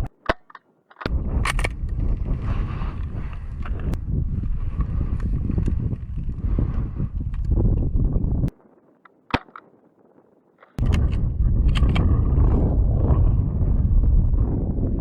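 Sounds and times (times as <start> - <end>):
wind buffeting microphone: 1.0 - 15.0
airsoft rifle shot snap: 9.3 - 9.7
small clicks: 10.6 - 12.1.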